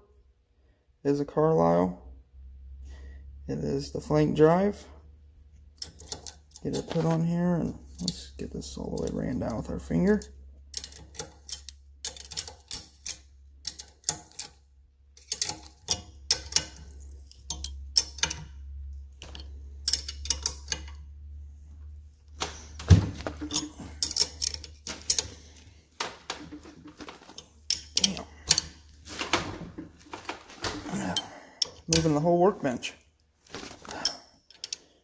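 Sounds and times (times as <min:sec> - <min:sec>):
steady low hum: 0:01.7 - 0:35.0
wrench clicking on metal nut: 0:09.0 - 0:14.6, 0:15.2 - 0:18.5, 0:19.2 - 0:21.0, 0:23.4 - 0:25.4, 0:27.4 - 0:28.7, 0:34.0 - 0:35.0.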